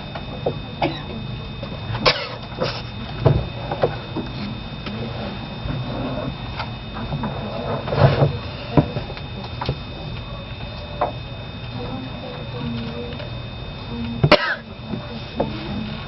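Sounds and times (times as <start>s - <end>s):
steady low hum: 0.0s - 16.0s
light knocks and clicks at desks: 3.0s - 5.0s.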